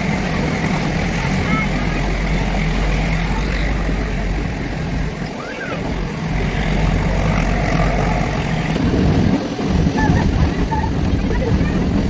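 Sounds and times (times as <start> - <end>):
faint voices: 0.0 - 12.0
train rumbling: 0.0 - 12.0.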